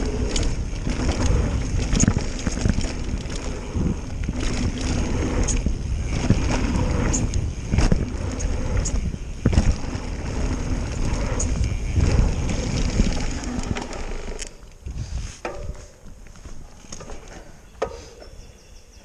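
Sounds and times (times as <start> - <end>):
bike knocks and rattles: 0.0 - 14.6, 15.3 - 18.4
tyres rumbling on dirt: 0.0 - 14.6
wind buffeting microphone: 0.0 - 16.8.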